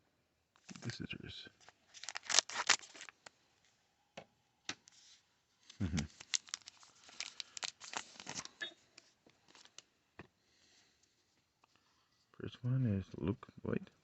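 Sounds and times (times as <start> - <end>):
foil wrapper crackling and tearing: 1.9 - 3.3, 5.7 - 8.6.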